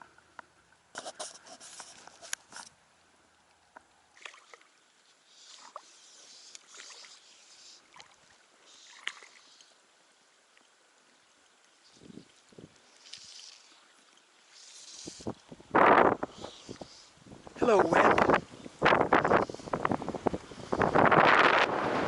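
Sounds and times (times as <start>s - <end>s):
small clicks and rustles: 0.1s - 2.8s, 11.6s - 15.6s
water lapping and splashing: 3.4s - 22.0s.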